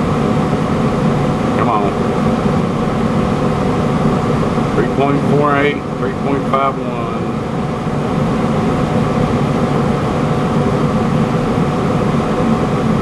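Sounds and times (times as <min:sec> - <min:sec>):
faint constant hum: 0:00.0 - 0:13.0
gas furnace blower rushing: 0:00.0 - 0:13.0.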